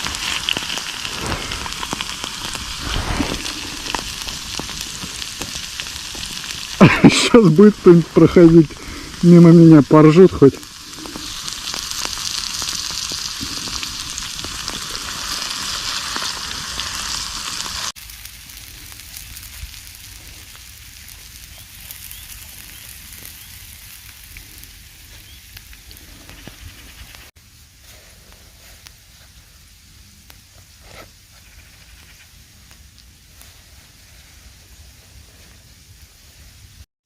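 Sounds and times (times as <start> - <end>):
potatoes sizzling in oil: 0.0 - 28.0.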